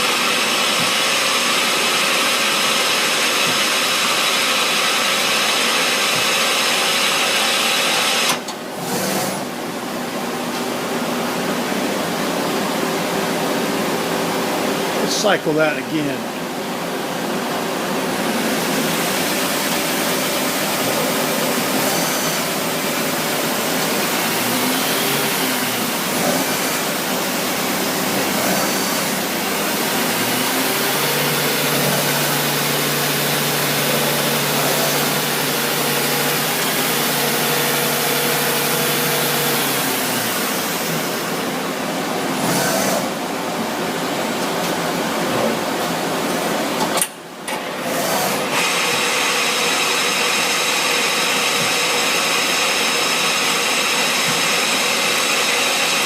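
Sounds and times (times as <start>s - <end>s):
machine hum and hiss: 0.0s - 56.0s.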